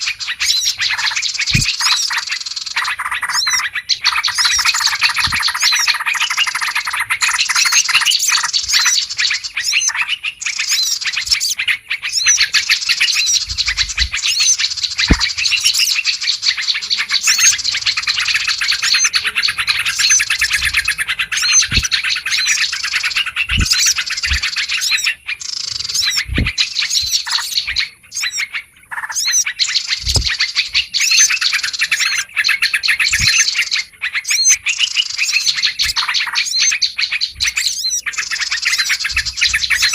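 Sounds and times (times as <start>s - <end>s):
flock of birds chirping: 0.0s - 39.9s
short low thumps: 1.5s - 1.7s, 13.4s - 14.3s, 23.5s - 24.5s, 26.2s - 27.8s, 30.0s - 30.4s.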